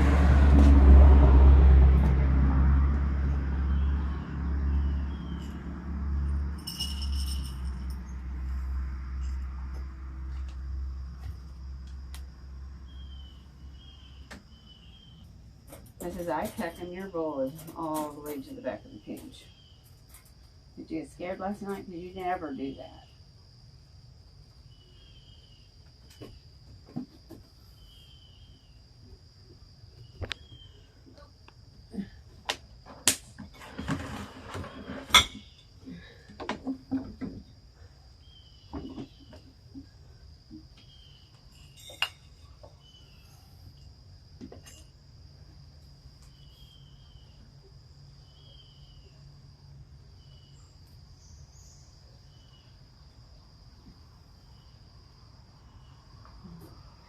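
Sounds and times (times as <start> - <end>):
crickets chirring: 2.5 - 57.0
metallic ringing jingle: 6.6 - 8.2.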